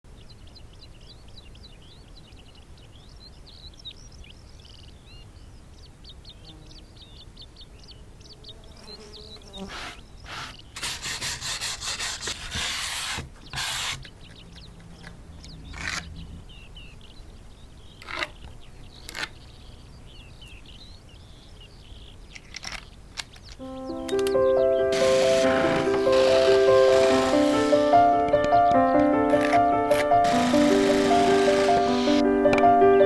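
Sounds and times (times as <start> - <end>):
small birds chirping: 0.1 - 33.0
rasping strokes on wood: 9.7 - 14.0, 25.0 - 28.2, 30.2 - 32.2.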